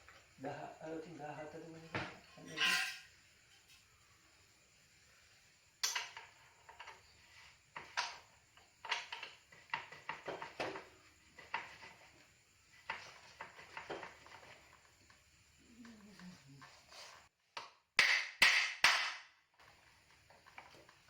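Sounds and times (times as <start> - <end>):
metal tools clinking and knocking: 2.0 - 3.8, 5.8 - 7.0.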